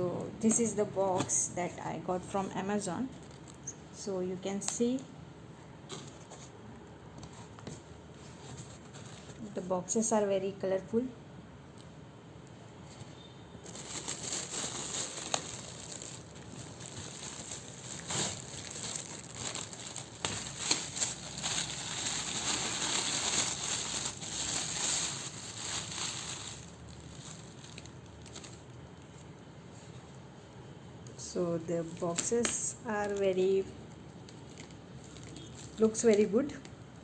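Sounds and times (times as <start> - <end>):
packaging crinkling and rustling: 2.4 - 3.8, 5.9 - 9.6, 13.6 - 30.2, 31.9 - 36.9.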